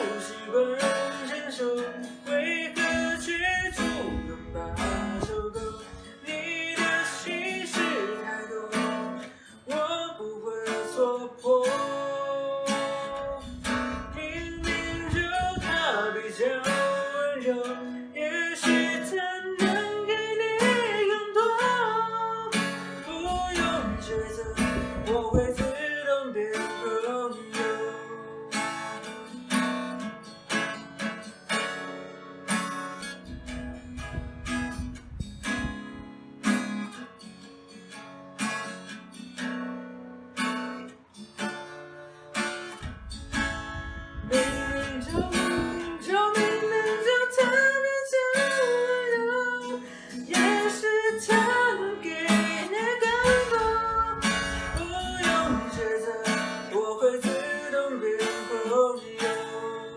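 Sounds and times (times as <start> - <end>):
person singing: 0.0 - 28.6, 44.2 - 59.9
acoustic guitar strumming: 0.0 - 59.9.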